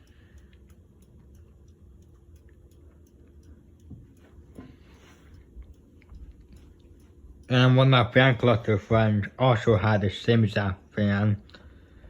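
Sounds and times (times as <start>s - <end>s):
light ticks: 0.0s - 9.4s
ceiling fan hum: 0.0s - 12.0s.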